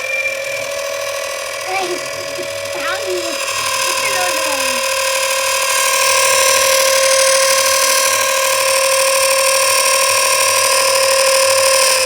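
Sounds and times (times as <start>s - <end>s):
electric motor whine: 0.0s - 12.0s.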